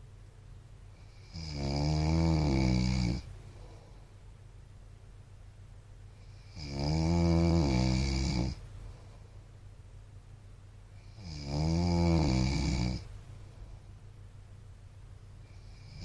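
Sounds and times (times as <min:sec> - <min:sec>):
quiet breathing: 0:00.8 - 0:04.4, 0:06.0 - 0:09.7, 0:10.8 - 0:11.6, 0:12.2 - 0:14.2, 0:15.3 - 0:16.0
man snoring loudly: 0:01.2 - 0:03.3, 0:06.5 - 0:08.6, 0:11.2 - 0:13.1.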